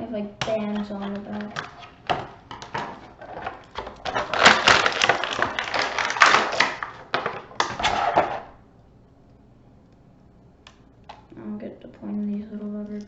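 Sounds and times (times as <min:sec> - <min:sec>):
plastic packaging crinkling: 0:01.3 - 0:08.6.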